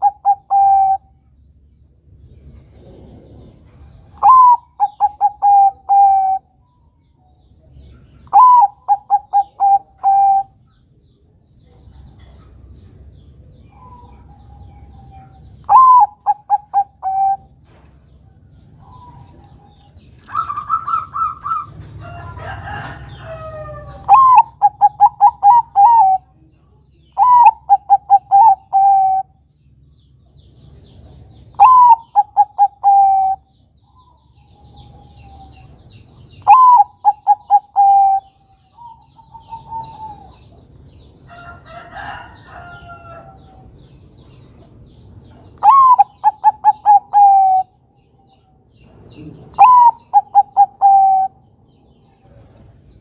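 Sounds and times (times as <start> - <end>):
dove cooing: 0.0 - 1.1, 4.2 - 6.5, 8.2 - 10.6, 13.7 - 17.6, 18.8 - 26.4, 27.2 - 29.4, 31.5 - 33.5, 36.4 - 40.6, 45.6 - 47.8, 49.1 - 51.4
higher steady bird call: 0.0 - 1.2, 4.2 - 6.6, 8.2 - 10.6, 13.7 - 17.6, 20.2 - 26.3, 27.1 - 29.4, 31.5 - 35.7, 36.3 - 40.4, 45.6 - 47.8, 49.5 - 51.4.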